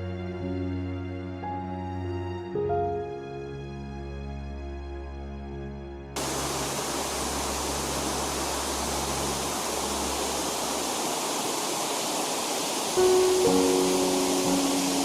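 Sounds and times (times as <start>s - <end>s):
background music: 0.0s - 7.9s, 13.0s - 15.0s
waterfall roaring: 6.2s - 15.0s.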